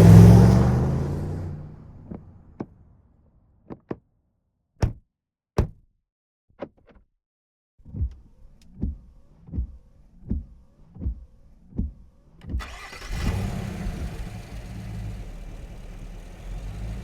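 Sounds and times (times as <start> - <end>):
car engine: 0.0 - 3.0, 8.2 - 17.0
regular low thumping: 4.8 - 5.0, 5.6 - 5.8, 8.8 - 12.6.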